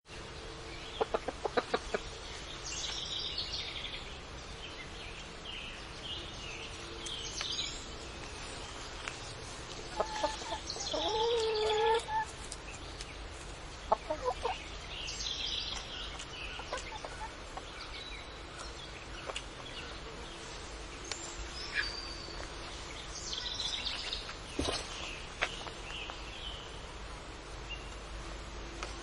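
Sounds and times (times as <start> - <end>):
background hiss: 0.1 - 29.0
chickens clucking: 0.8 - 2.4, 9.6 - 20.0
high chirping calls: 9.8 - 13.2, 13.9 - 20.2.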